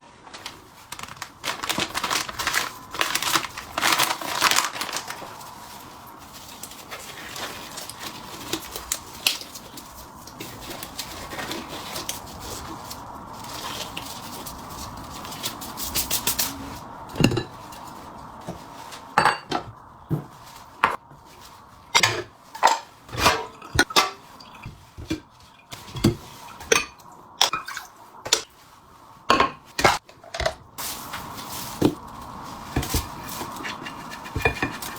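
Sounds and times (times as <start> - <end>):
metal pots and ladles clattering: 21.9 - 28.4.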